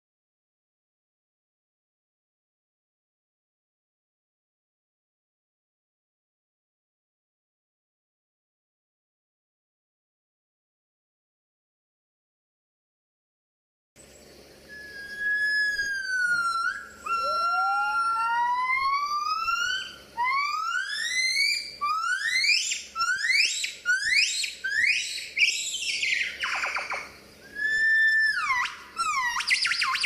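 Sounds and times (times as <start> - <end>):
gibbons singing whoops: 14.7 - 30.0.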